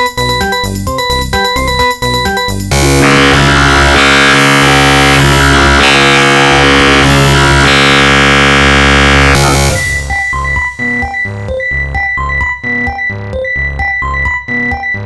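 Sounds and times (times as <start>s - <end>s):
dense synthesized note cluster: 2.7s - 11.4s.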